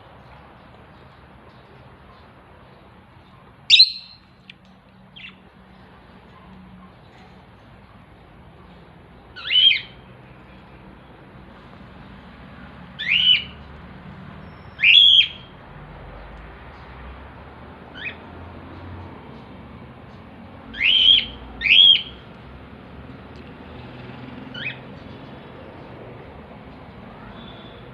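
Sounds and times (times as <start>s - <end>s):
lovebirds shrill calls: 3.7s - 4.3s, 20.8s - 22.2s.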